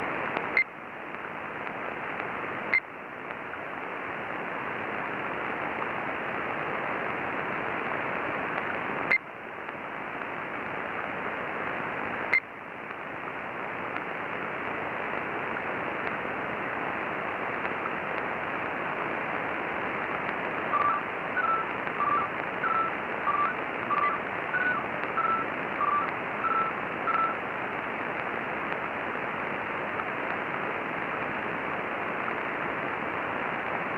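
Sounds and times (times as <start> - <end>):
radio static hiss: 0.0 - 33.9
two-pitch short beeps: 20.8 - 27.4.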